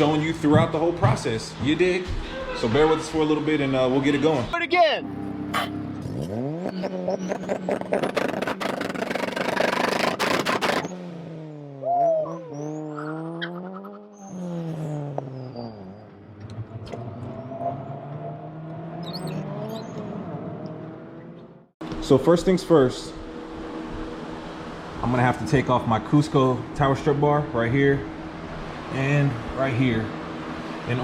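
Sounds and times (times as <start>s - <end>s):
car engine revving: 5.0s - 21.8s.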